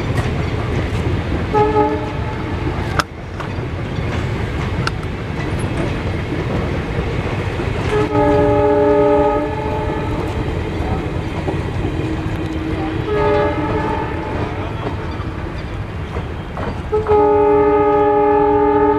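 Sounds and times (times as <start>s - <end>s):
locomotive horn blasts: 1.5s - 2.6s, 7.9s - 10.4s, 12.0s - 15.1s, 16.9s - 18.9s.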